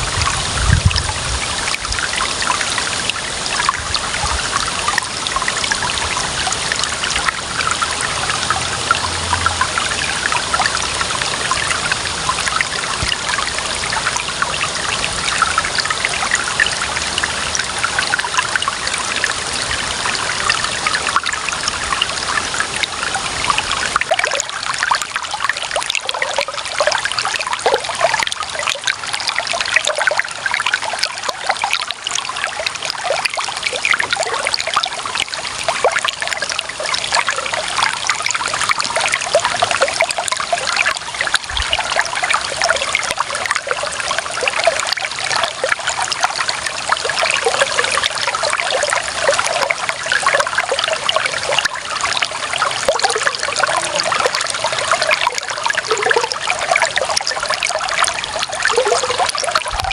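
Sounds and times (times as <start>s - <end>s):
water trickling over stones: 0.0s - 59.9s.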